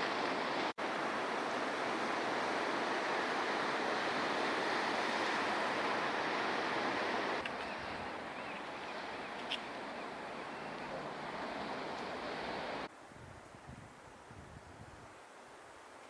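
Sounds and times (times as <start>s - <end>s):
surf washing on rocks: 0.0s - 12.9s.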